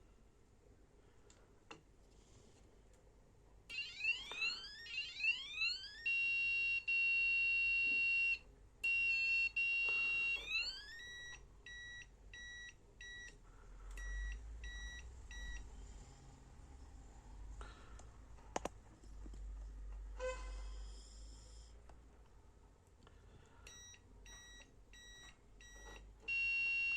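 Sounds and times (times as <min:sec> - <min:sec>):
electronic bike horn: 0:20.2 - 0:20.8.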